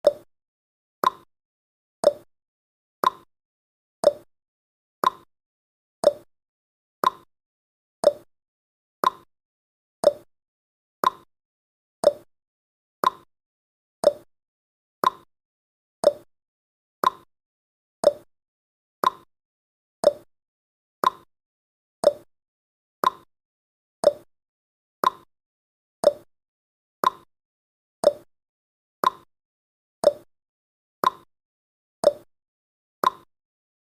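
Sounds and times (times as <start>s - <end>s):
timer ticking: 0.0s - 0.3s, 1.0s - 1.3s, 2.0s - 2.3s, 3.0s - 3.3s, 4.0s - 4.3s, 5.0s - 5.3s, 6.0s - 6.3s, 7.0s - 7.3s, 8.0s - 8.3s, 9.0s - 9.3s, 10.0s - 10.3s, 11.0s - 11.3s, 12.0s - 12.3s, 13.0s - 13.3s, 14.0s - 14.3s, 15.0s - 15.3s, 16.0s - 16.3s, 17.0s - 17.3s, 18.0s - 18.3s, 19.0s - 19.3s, 20.0s - 20.3s, 21.0s - 21.3s, 22.0s - 22.3s, 23.0s - 23.3s, 24.0s - 24.3s, 25.0s - 25.3s, 26.0s - 26.3s, 27.0s - 27.3s, 28.0s - 28.3s, 29.0s - 29.3s, 30.0s - 30.3s, 31.0s - 31.3s, 32.0s - 32.3s, 33.0s - 33.3s.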